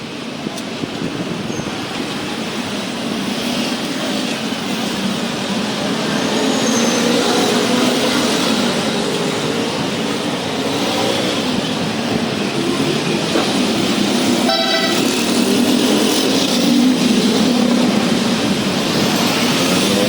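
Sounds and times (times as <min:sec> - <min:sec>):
vehicle horn toot: 0:14.5 - 0:15.3.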